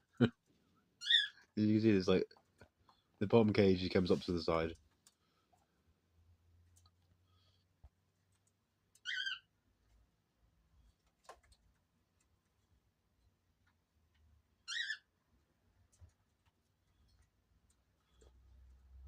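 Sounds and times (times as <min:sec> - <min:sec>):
high-pitched bird chirps: 0:01.0 - 0:01.4, 0:09.0 - 0:09.5, 0:14.7 - 0:15.1.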